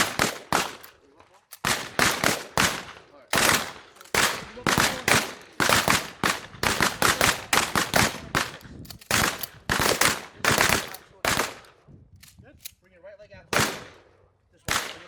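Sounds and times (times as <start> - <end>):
shotgun shots with echo: 0.0 - 0.9, 1.6 - 11.7, 13.5 - 14.0, 14.7 - 15.0.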